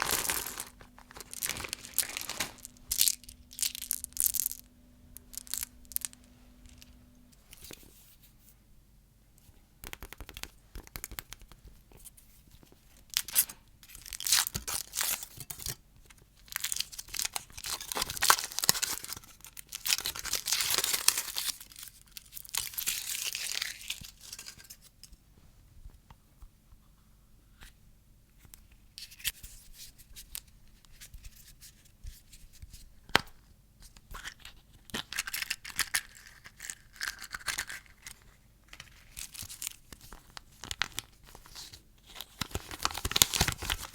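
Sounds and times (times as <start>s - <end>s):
candy wrappers crinkling: 0.0s - 7.7s, 13.1s - 15.3s, 16.5s - 24.8s, 34.2s - 43.9s.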